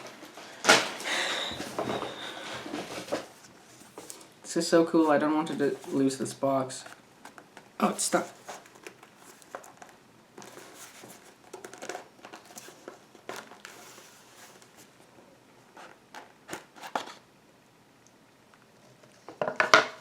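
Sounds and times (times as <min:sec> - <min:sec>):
packaging rustling: 0:05.1 - 0:15.0.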